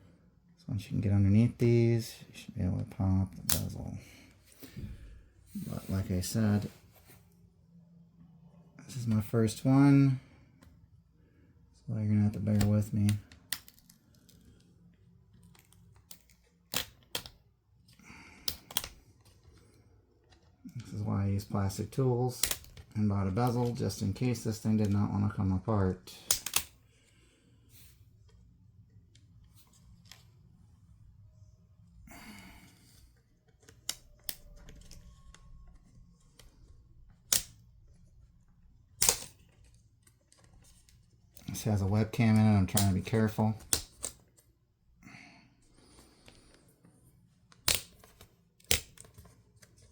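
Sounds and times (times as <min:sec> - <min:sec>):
sharp plastic clicks: 0:15.4 - 0:17.4, 0:18.4 - 0:19.6, 0:22.4 - 0:22.9, 0:26.2 - 0:26.8, 0:33.5 - 0:37.6, 0:39.0 - 0:39.7, 0:42.6 - 0:44.2, 0:47.5 - 0:49.3.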